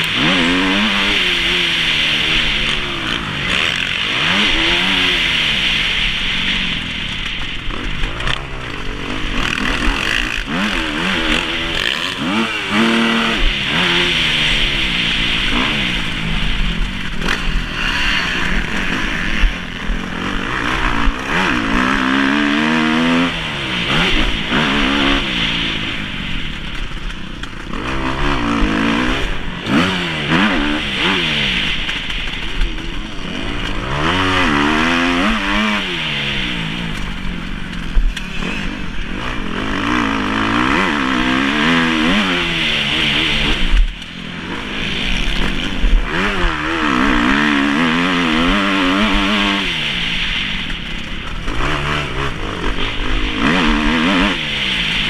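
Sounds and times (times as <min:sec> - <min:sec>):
motocross engine revving: 0:00.0 - 0:55.0.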